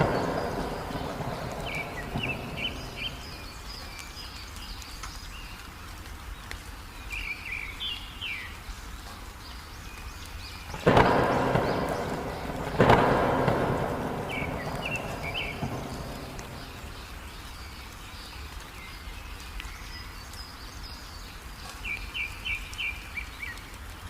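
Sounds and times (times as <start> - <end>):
thunder clap: 0.0 - 3.9, 10.7 - 17.4
heavy rain falling: 0.0 - 24.0
small birds chirping: 0.0 - 24.0.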